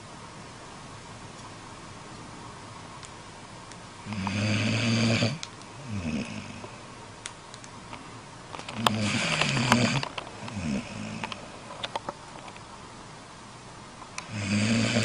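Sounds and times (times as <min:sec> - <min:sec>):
pet snoring: 0:04.0 - 0:06.6, 0:08.8 - 0:11.4, 0:14.2 - 0:15.0
quiet breathing: 0:04.1 - 0:07.0.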